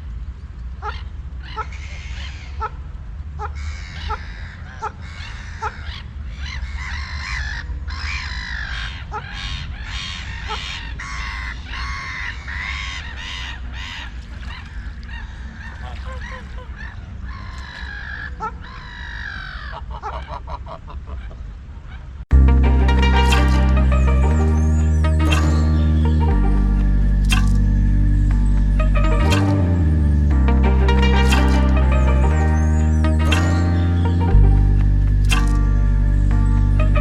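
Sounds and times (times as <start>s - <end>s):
steady low rumble: 22.3s - 37.0s.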